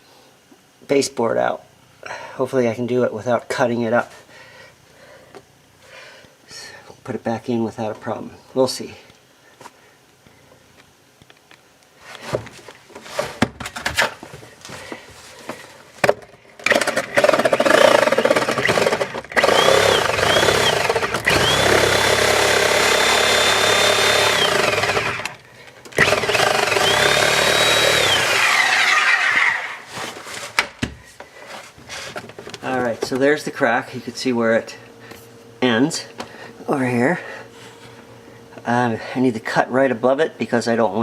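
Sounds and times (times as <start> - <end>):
power tool motor whining: 16.6 - 29.9.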